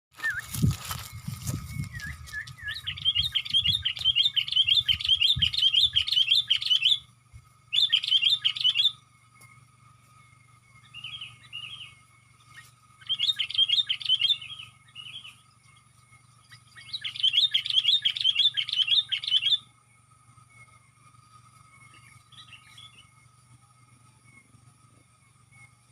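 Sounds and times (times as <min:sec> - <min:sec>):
bird chattering in rapid chirps: 0:02.5 - 0:07.0, 0:07.7 - 0:09.0, 0:12.6 - 0:15.4, 0:16.5 - 0:19.6.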